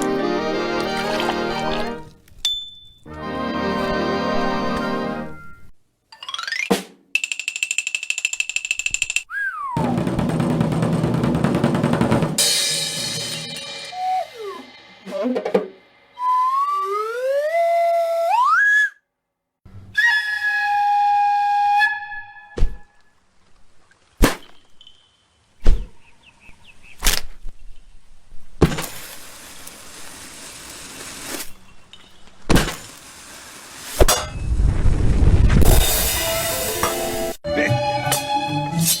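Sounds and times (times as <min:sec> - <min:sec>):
held whistle-like tone: 0:09.3 - 0:09.9, 0:13.7 - 0:15.4, 0:16.1 - 0:19.0, 0:19.9 - 0:23.0
whistle gliding upward: 0:09.3 - 0:09.9, 0:13.7 - 0:15.4, 0:16.1 - 0:19.0, 0:19.9 - 0:22.6
bursts of hissing noise: 0:28.8 - 0:31.6, 0:32.6 - 0:34.1.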